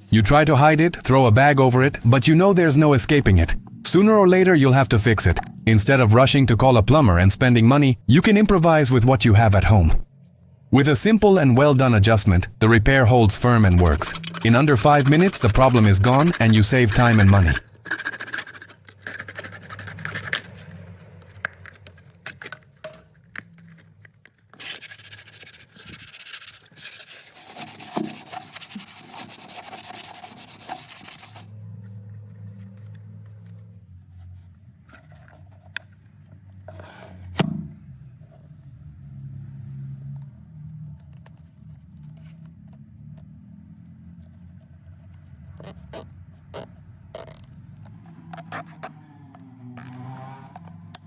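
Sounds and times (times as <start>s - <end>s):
coarse rasping on pipe: 13.5s - 20.9s, 24.6s - 31.5s.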